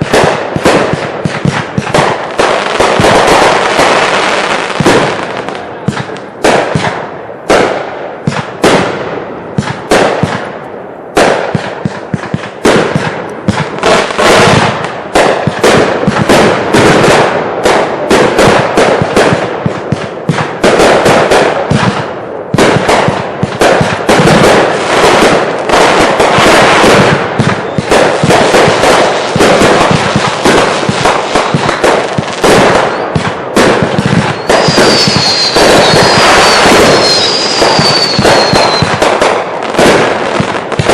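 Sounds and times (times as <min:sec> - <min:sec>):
fireworks bangs and crackles: 0:00.0 - 0:40.9
high firework whistles: 0:23.6 - 0:40.9.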